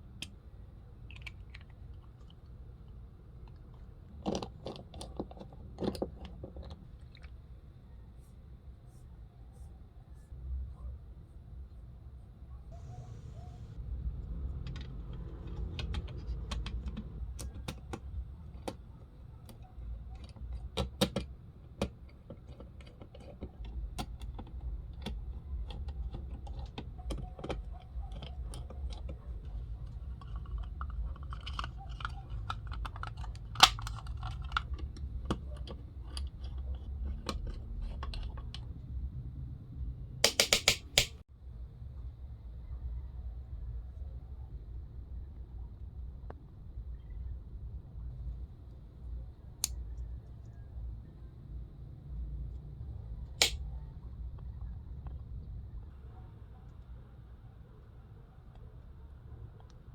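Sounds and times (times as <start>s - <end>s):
clicks of small objects handled: 53.4s - 53.6s.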